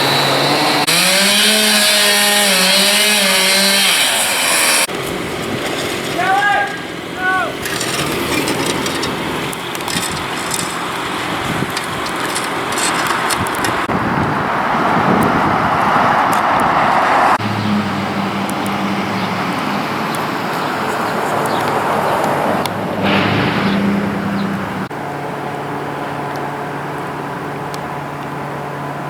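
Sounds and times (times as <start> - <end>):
road traffic noise: 0.0 - 29.0
low engine hum: 6.9 - 29.0
vehicle passing: 7.6 - 24.9.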